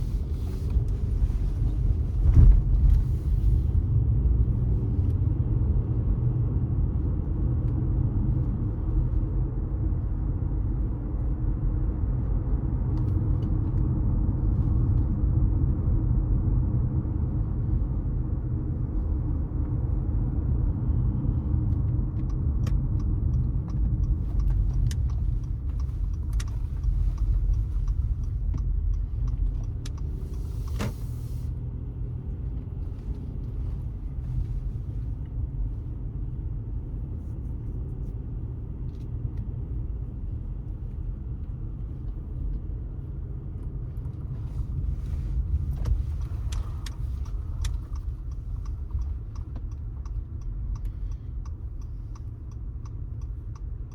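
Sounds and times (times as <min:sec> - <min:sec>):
road and tyre rumble: 0:00.0 - 0:53.9
light clicks and rattles: 0:21.7 - 0:30.9, 0:45.0 - 0:53.9.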